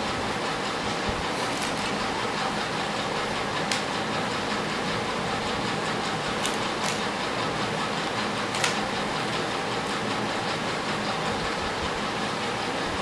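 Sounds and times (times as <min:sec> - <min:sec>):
puzzle cube clicking and rattling: 0:01.3 - 0:02.1, 0:06.4 - 0:07.1, 0:08.5 - 0:10.1.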